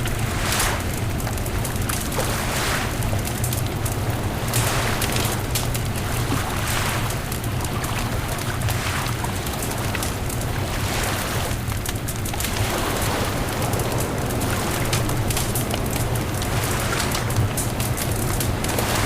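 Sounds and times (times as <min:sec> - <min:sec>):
bonfire crackling: 0:00.0 - 0:19.0
fire popping: 0:00.0 - 0:19.0
low rumble of fire: 0:00.0 - 0:19.0.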